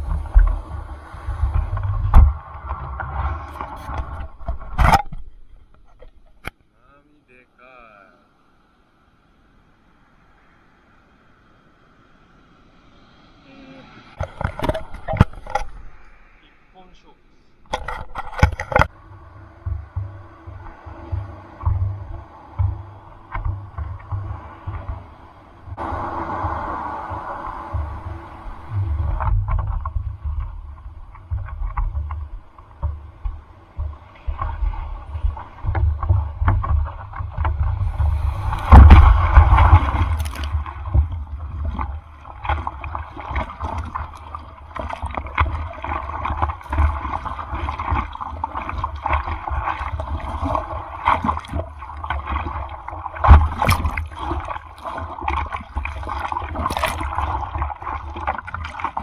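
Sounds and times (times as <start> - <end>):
seawater splashing and sloshing: 0.0 - 6.6, 9.6 - 59.0
wind buffeting microphone: 17.6 - 59.0.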